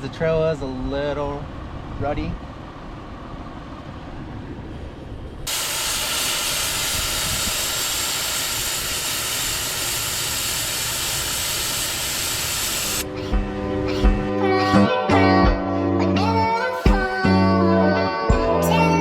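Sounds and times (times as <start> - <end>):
air hissing out of tire: 5.5 - 13.1.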